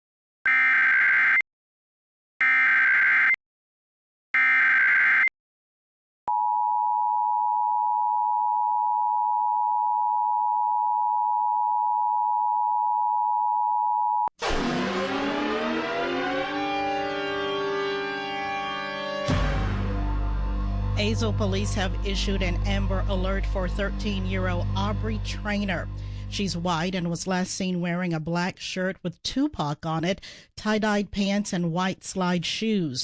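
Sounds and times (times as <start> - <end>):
falling tones: 14.4 - 21.3.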